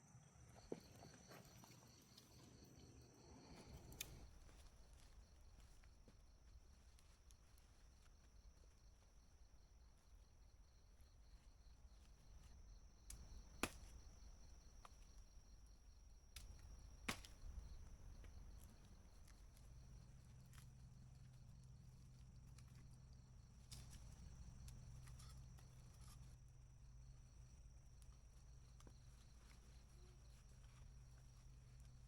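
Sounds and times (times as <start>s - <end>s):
campfire wood popping: 3.6s - 5.9s, 13.0s - 15.3s, 16.3s - 21.5s.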